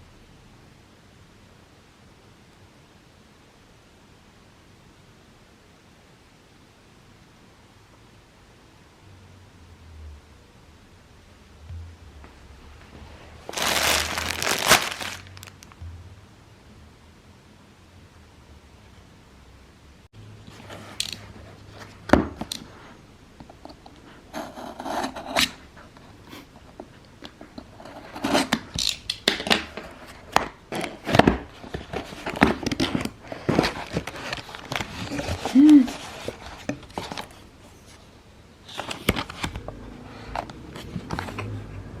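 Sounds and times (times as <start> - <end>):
handling clicks taps and scrapes: 20.5 - 22.7, 23.4 - 38.0.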